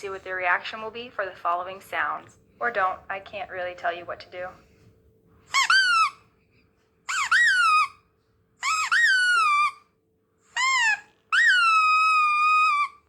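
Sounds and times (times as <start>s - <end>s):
high-pitched squeaky calls: 5.5s - 6.2s, 7.1s - 8.0s, 8.6s - 9.9s, 10.5s - 13.0s.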